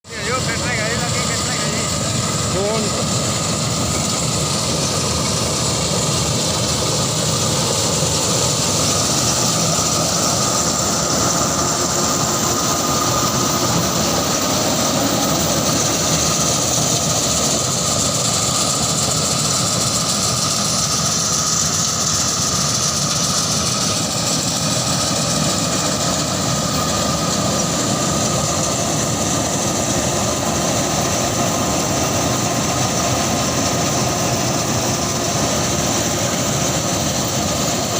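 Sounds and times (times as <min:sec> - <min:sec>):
combine harvester running: 0:00.0 - 0:37.9.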